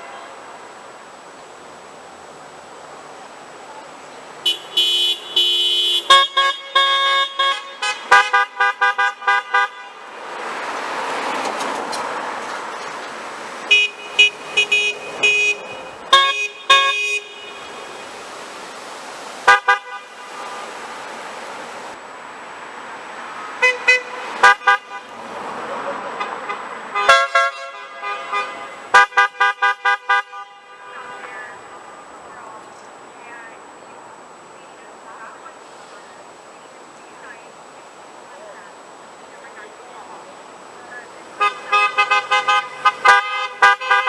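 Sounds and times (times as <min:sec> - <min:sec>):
car horns honking: 0:00.0 - 0:00.6, 0:04.4 - 0:12.1, 0:13.6 - 0:18.8, 0:19.4 - 0:22.0, 0:23.5 - 0:32.3, 0:41.3 - 0:44.0
passing traffic: 0:00.0 - 0:44.0.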